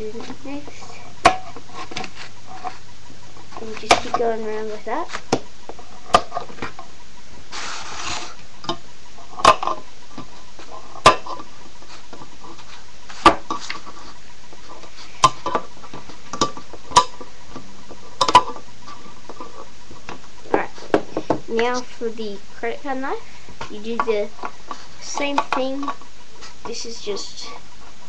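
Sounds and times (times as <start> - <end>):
short scraping: 7.5 - 8.4.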